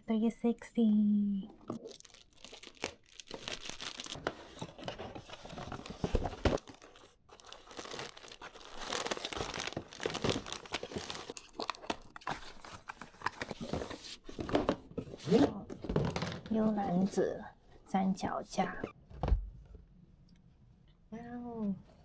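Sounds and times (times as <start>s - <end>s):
packaging crinkling and tearing: 1.7s - 13.9s.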